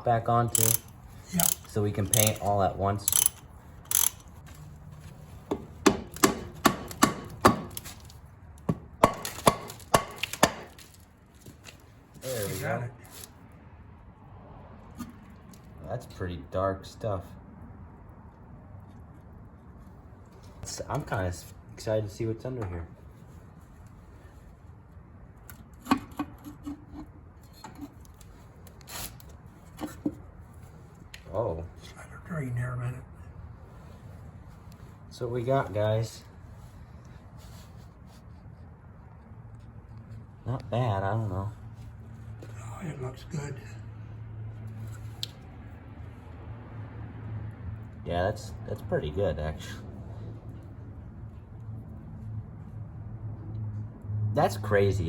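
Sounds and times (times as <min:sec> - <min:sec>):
hand tools clicking on metal: 0:00.5 - 0:04.6.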